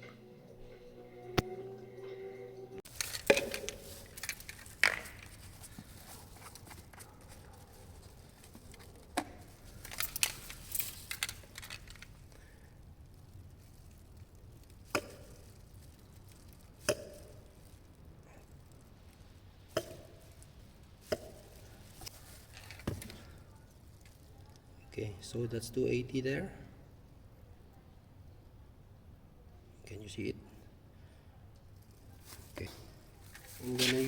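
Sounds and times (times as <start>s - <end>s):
containers and tools clicking: 2.8s - 7.4s.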